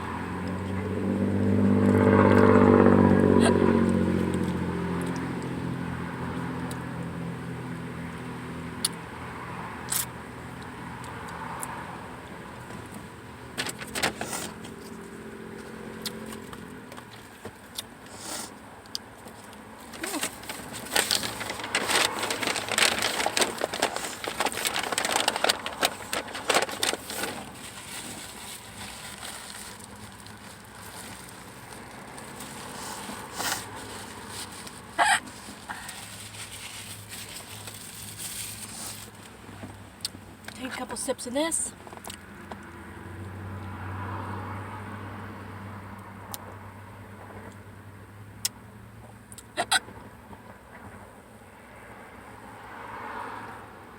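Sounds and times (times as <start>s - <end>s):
paper food wrapper crackling: 13.5s - 14.6s, 19.2s - 39.4s.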